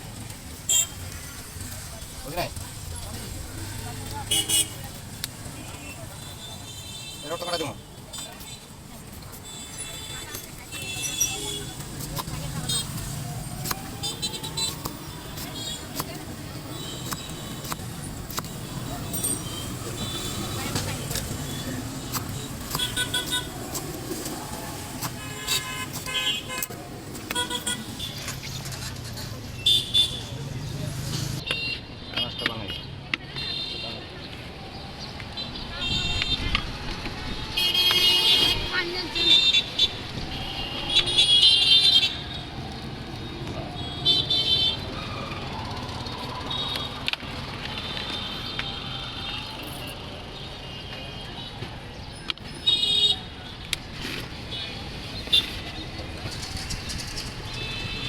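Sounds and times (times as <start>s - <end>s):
low rumble of traffic: 0.0s - 58.0s
vehicle horns tooting: 4.3s - 4.8s, 19.2s - 23.5s, 25.0s - 26.7s, 37.6s - 42.2s.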